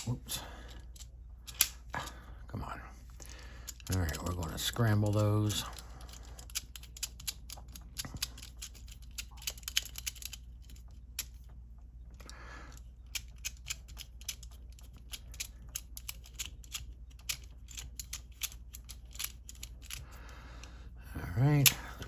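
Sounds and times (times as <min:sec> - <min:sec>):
combination lock wheels clicking: 0:03.2 - 0:11.4, 0:12.7 - 0:20.2.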